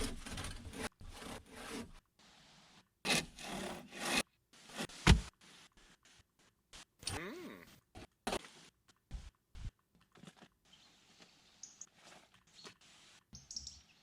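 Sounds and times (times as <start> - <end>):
hand tool scraping wood: 0.0 - 2.0, 3.0 - 5.1.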